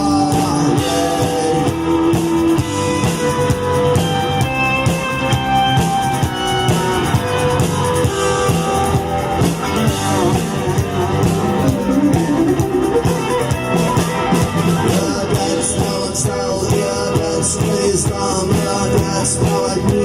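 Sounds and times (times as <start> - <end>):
guitar melody: 0.0 - 16.9
rock band playing: 0.0 - 20.0.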